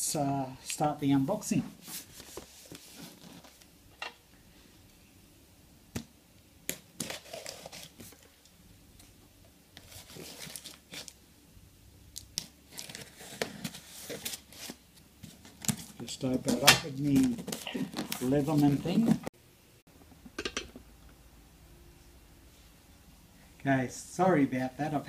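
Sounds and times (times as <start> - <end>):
packaging crinkling and tearing: 6.7 - 8.3, 9.8 - 11.2, 12.2 - 14.8.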